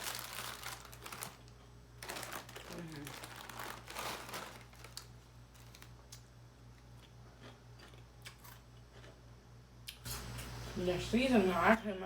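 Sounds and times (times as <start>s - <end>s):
potato chips crunching: 0.0s - 9.2s.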